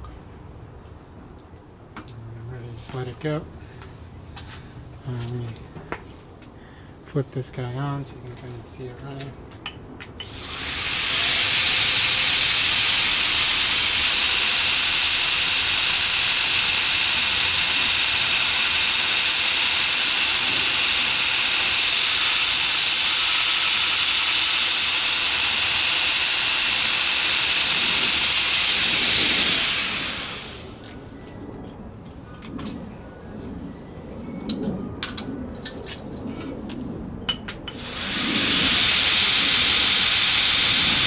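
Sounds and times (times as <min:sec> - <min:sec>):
belt grinder running: 0:10.2 - 0:30.9, 0:37.7 - 0:41.0.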